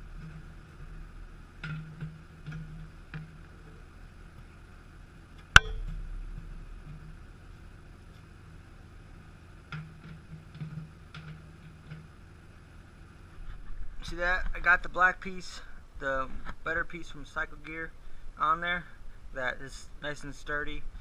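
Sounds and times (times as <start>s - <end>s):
steady background hum: 0.0s - 21.0s
sharp metallic clank: 5.6s - 5.9s.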